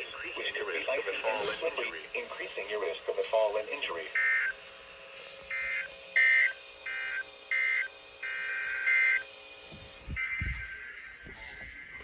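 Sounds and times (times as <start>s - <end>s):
two-tone electronic data bursts: 4.0s - 4.6s, 5.4s - 9.3s, 10.0s - 12.0s.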